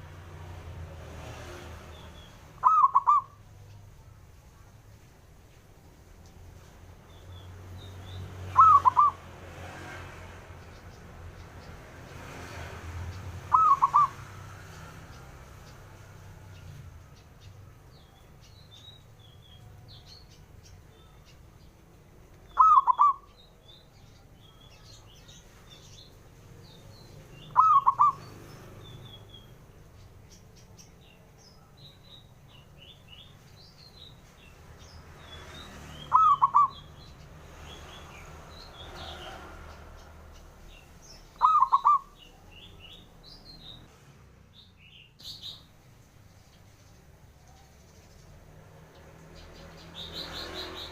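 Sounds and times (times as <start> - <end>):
small birds chirping: 0.0 - 50.9
dove cooing: 2.6 - 3.4, 8.5 - 9.2, 13.4 - 14.2, 22.6 - 23.3, 27.5 - 28.4, 36.1 - 36.8, 41.4 - 42.2.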